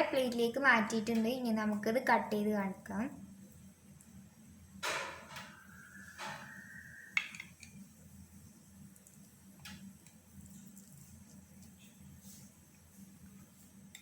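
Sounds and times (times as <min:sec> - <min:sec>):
thin squeal: 0:05.5 - 0:07.2.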